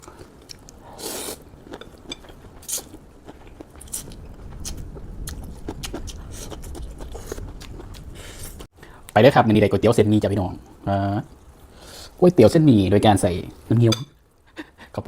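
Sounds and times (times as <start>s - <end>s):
person chewing crunchy food: 0.0s - 8.7s.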